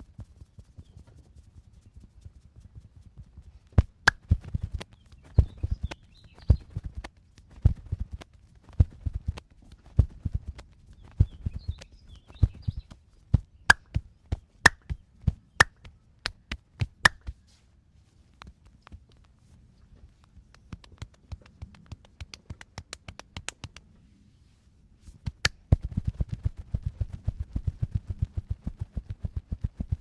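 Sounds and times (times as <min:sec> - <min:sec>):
hands slapping body: 0:13.4 - 0:17.4, 0:20.5 - 0:23.8, 0:25.2 - 0:26.6.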